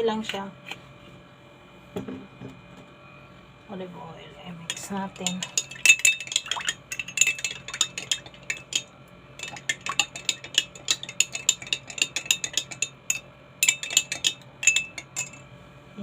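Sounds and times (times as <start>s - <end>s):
spoon clinking against glass: 4.7s - 15.4s.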